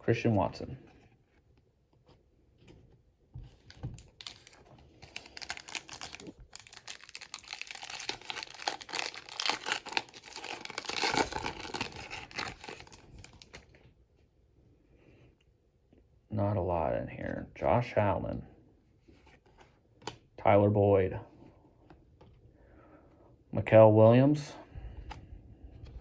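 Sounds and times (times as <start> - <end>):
wrapper tearing and crinkling: 4.0 - 13.6.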